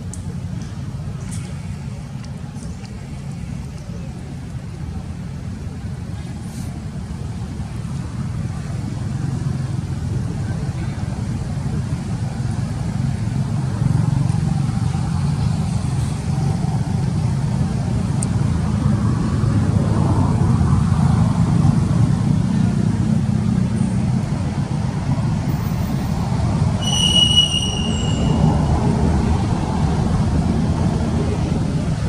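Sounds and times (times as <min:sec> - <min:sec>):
low outdoor rumble: 0:00.0 - 0:32.0
short high whistle-like call: 0:26.8 - 0:28.5.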